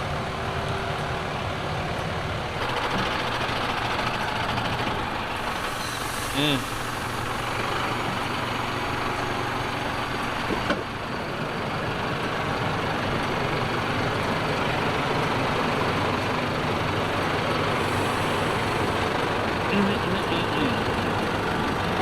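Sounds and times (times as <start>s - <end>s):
truck engine running: 0.0s - 22.0s.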